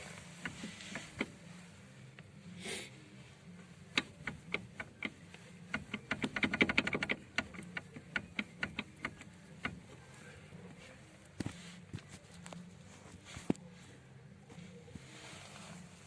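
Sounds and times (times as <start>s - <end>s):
shock absorber knocking in mount: 3.9s - 9.8s.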